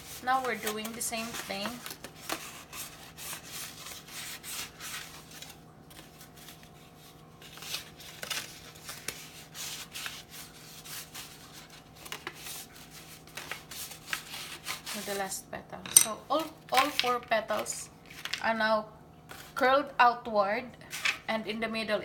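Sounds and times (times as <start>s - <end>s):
rod scraping paper: 0.0s - 15.3s.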